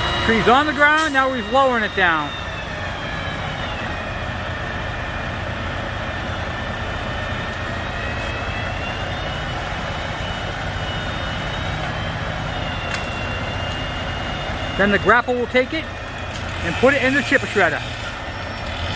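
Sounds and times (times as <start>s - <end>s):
high whine: 0.0s - 5.0s
heavy machinery engine hum: 0.0s - 18.9s.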